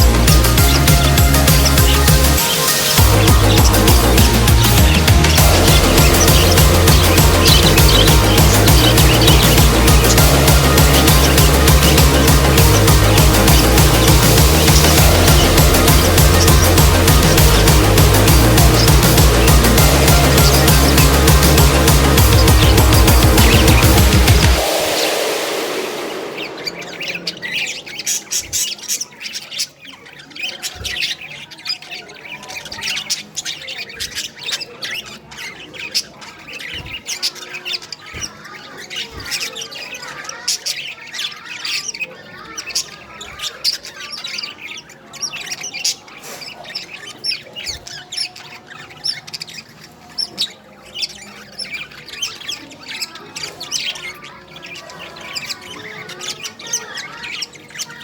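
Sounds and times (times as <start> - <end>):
budgerigars chirping and squawking: 0.0 - 58.0.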